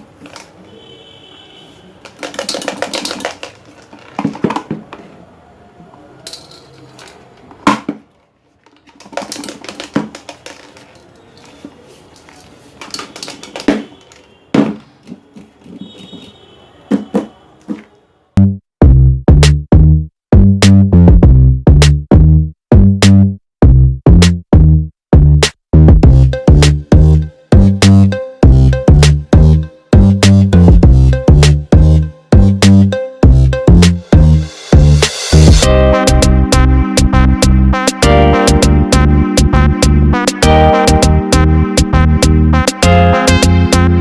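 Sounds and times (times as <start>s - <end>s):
clatters and knocks: 2.1s - 5.0s, 6.3s - 11.1s
electronic music with drum-machine beat: 18.8s - 44.0s.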